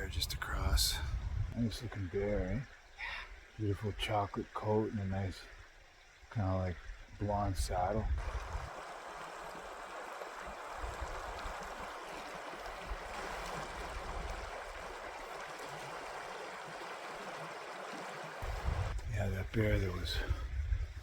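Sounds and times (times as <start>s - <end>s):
river water rushing: 8.2s - 18.9s.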